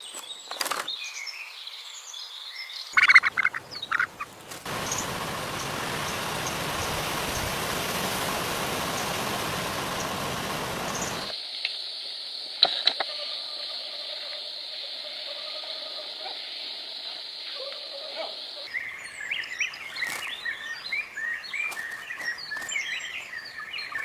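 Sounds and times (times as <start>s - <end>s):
birds chirping: 2.6s - 11.3s, 18.7s - 24.0s
harsh bird calls: 2.9s - 11.3s
steady hiss: 3.3s - 11.4s.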